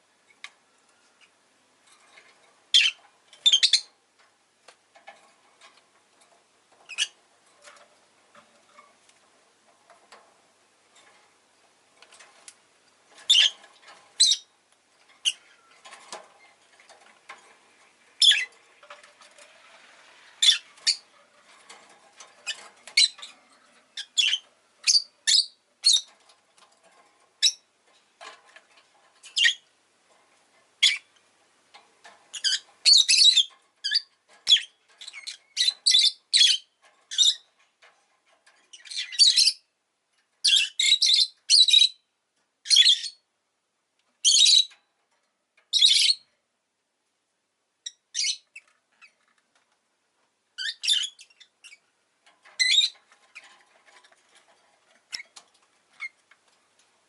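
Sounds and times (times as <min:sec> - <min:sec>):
lovebird chirping and squawking: 0:02.7 - 0:03.9, 0:06.9 - 0:07.2, 0:13.3 - 0:13.6, 0:14.2 - 0:14.5, 0:18.2 - 0:18.6, 0:20.4 - 0:21.1, 0:22.4 - 0:26.1, 0:27.4 - 0:27.6, 0:29.3 - 0:29.6, 0:30.8 - 0:31.1, 0:32.3 - 0:37.5, 0:38.8 - 0:39.6, 0:40.4 - 0:42.0, 0:42.7 - 0:43.2, 0:44.3 - 0:44.7, 0:45.7 - 0:46.2, 0:47.9 - 0:49.1, 0:50.6 - 0:51.8, 0:52.6 - 0:53.4.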